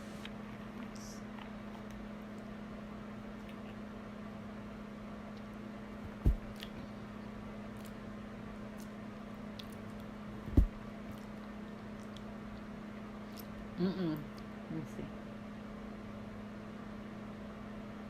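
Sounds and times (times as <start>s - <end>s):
steady low hum: 0.0s - 18.0s
dull thump: 6.0s - 6.5s, 10.5s - 10.8s.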